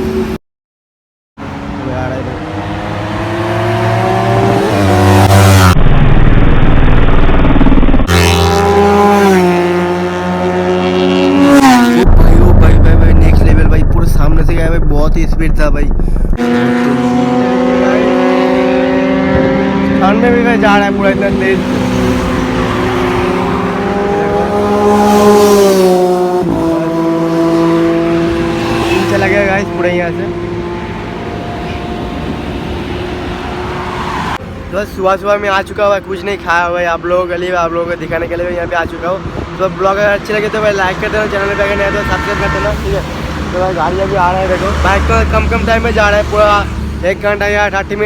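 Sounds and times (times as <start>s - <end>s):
sport motorcycle passing at speed: 1.7s - 5.9s, 6.5s - 12.1s, 16.3s - 34.4s.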